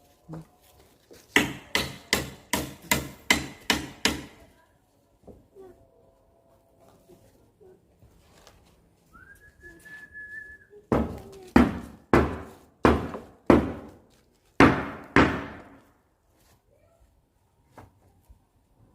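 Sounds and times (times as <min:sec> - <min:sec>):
high whistle-like tone: 0:09.1 - 0:10.8.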